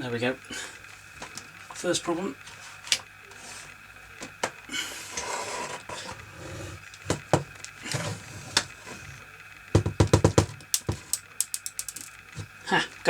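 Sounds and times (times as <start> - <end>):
screwdriver tapping on plastic: 9.8 - 12.0
rattling taps: 9.8 - 12.5.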